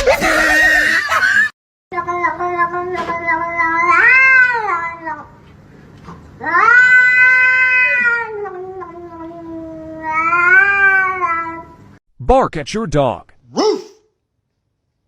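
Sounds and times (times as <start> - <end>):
cat yowling: 3.3 - 5.0, 6.4 - 11.6, 13.5 - 14.0.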